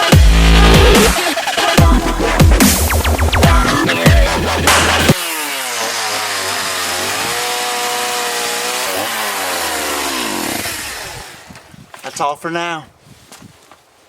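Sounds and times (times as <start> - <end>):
background music: 0.2 - 5.2
chainsaw cutting wood: 0.8 - 11.5.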